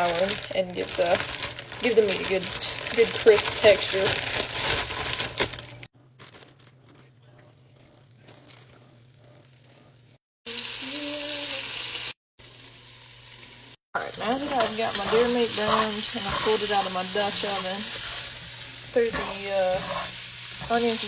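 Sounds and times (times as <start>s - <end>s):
meat sizzling and crackling in fat: 8.0s - 21.0s
faint crinkling: 14.0s - 21.0s.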